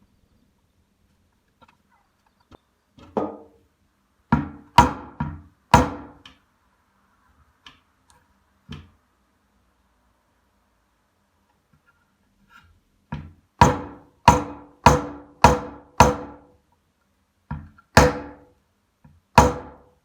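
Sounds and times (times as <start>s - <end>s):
knocks on a work surface: 3.1s - 3.5s.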